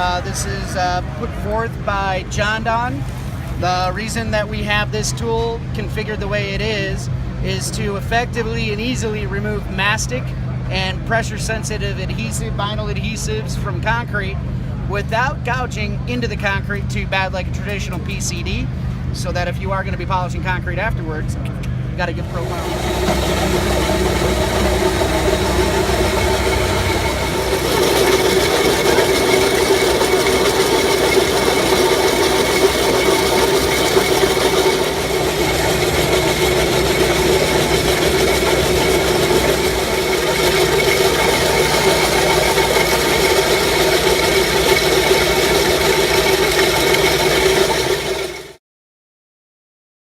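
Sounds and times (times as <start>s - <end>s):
floor grinder scraping concrete: 22.1s - 48.6s.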